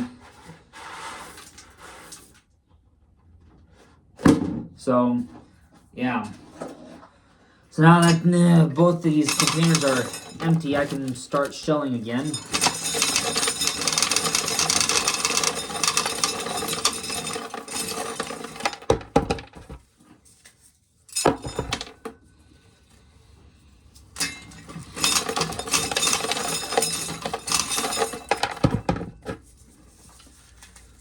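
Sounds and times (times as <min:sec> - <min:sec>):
corn kernels rattling into container: 0:08.9 - 0:19.8, 0:24.2 - 0:29.1.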